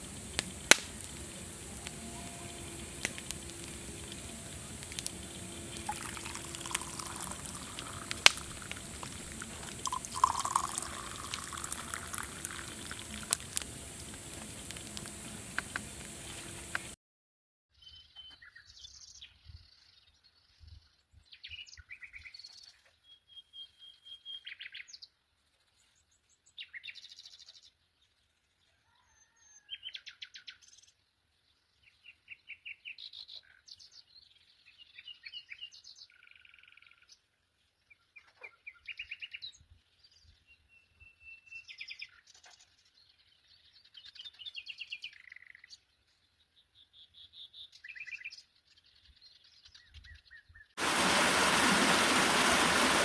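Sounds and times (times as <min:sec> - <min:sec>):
small birds singing: 0:00.0 - 0:17.0, 0:17.8 - 0:50.8
water running: 0:00.0 - 0:17.0, 0:50.8 - 0:53.0.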